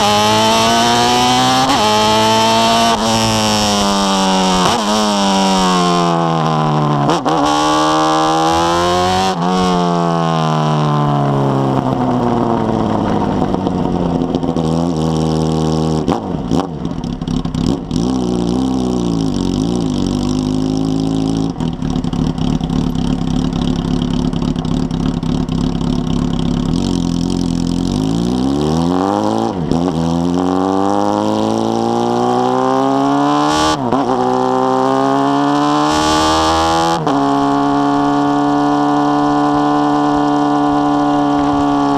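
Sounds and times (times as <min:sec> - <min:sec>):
motorcycle engine revving: 0:00.0 - 0:41.9.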